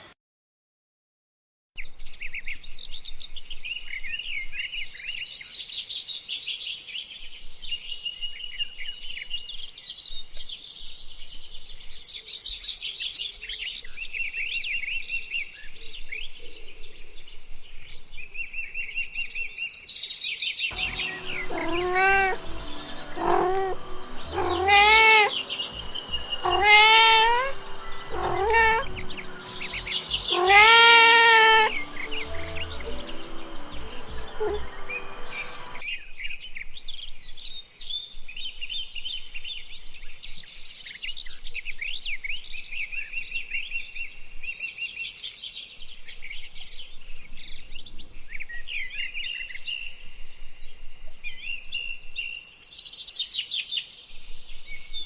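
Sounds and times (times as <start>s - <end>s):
birds chirping: 20.7s - 35.8s
cat meowing loudly: 21.2s - 22.4s, 23.2s - 25.4s, 26.3s - 32.6s, 34.4s - 34.6s.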